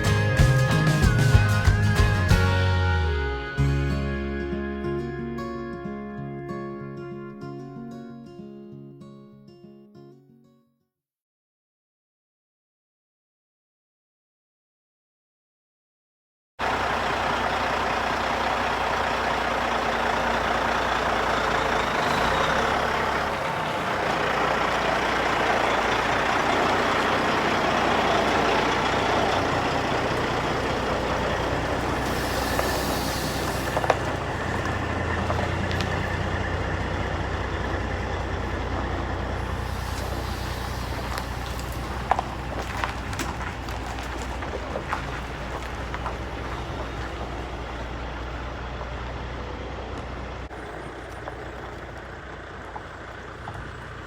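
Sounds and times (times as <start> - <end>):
vehicle engine running: 0.0 - 5.4, 16.6 - 54.0
high hiss of air: 31.8 - 34.2, 39.4 - 42.1.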